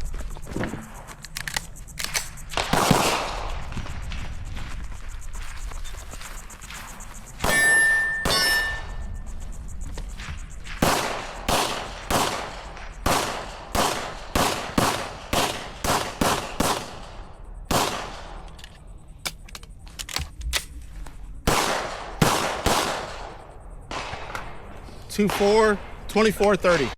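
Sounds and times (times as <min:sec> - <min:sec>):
pistol shots: 0:01.5 - 0:03.6, 0:07.4 - 0:09.0, 0:10.8 - 0:18.5, 0:21.5 - 0:24.6.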